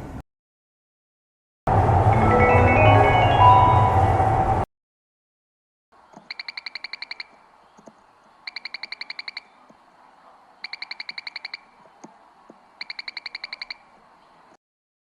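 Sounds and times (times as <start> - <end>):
electronic alarm rapid beeps: 6.3 - 7.3, 8.5 - 9.5, 10.6 - 11.7, 12.8 - 13.9.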